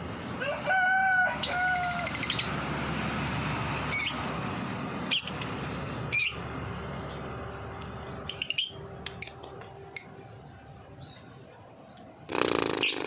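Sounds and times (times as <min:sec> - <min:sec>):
bird squawking: 0:12.3 - 0:13.0.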